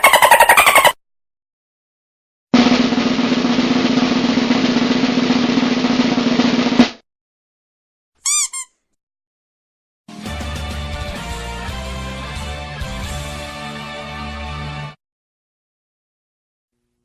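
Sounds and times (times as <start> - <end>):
sharp drum hit: 2.6 - 7.0
snare drum roll: 2.6 - 7.0
short pitch-bending chirps: 8.2 - 8.8.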